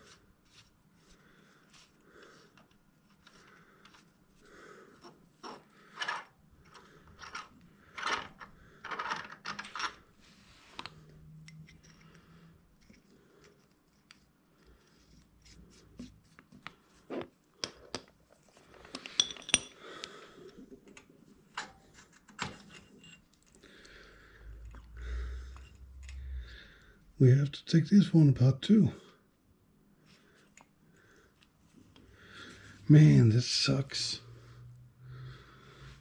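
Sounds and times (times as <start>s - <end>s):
metal parts clinking and knocking: 6.0s - 10.1s, 17.6s - 19.8s.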